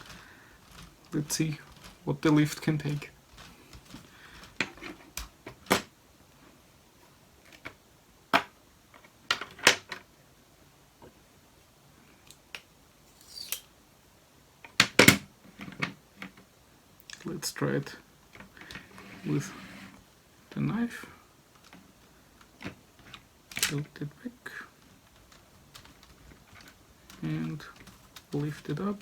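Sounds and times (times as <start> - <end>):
plastic parts clicking: 0.0 - 5.9, 21.5 - 24.0, 24.8 - 29.0.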